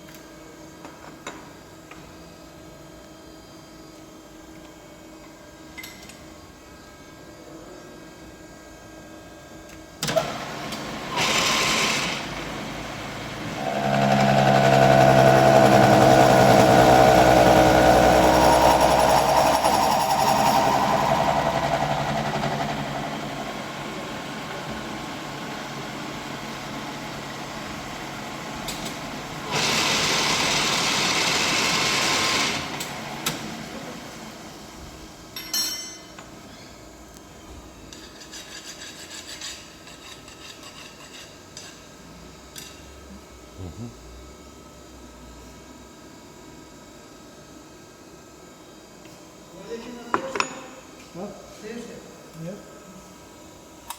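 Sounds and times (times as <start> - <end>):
milling machine cutting steel: 13.1 - 23.6.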